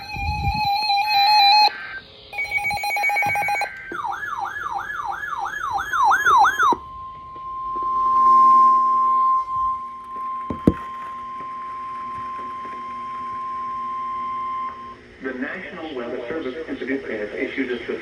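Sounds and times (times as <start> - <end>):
rapid pulsing alert beeps: 0.0 - 6.8
siren tone sweeping up and down: 0.0 - 15.1
steady high alarm tone: 0.0 - 15.2.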